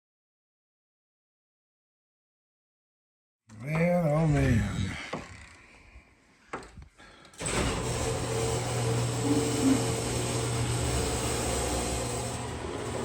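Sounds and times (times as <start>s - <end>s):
motor humming: 7.4s - 13.0s.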